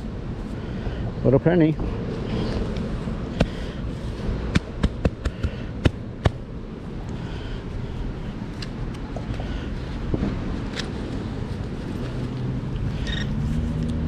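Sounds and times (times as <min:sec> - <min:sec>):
wind rumble on microphone: 0:00.0 - 0:14.0.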